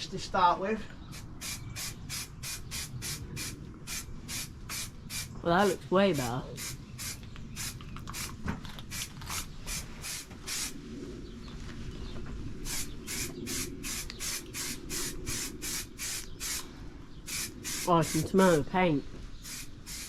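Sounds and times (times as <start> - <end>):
aerosol spray hissing bursts: 1.1 - 5.3, 6.5 - 8.3, 9.7 - 10.8, 12.7 - 16.6, 17.3 - 18.5, 19.4 - 20.0.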